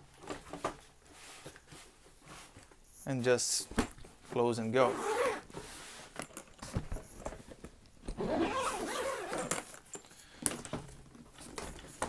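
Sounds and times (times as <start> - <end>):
suitcase zipper rasping: 4.9 - 5.5, 8.1 - 9.7
suitcase clicks and knocks: 6.5 - 9.8.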